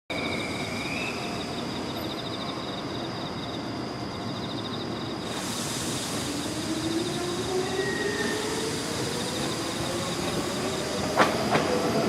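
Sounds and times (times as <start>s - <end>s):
pulsing insect trill: 0.1s - 5.4s, 6.4s - 11.1s
rising train whine: 0.1s - 12.0s
approaching train hiss: 5.1s - 12.0s.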